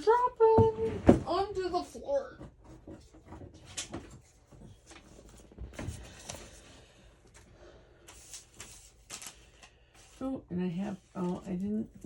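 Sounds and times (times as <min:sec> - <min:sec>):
paper cards rustling and tapping: 0:07.3 - 0:10.2.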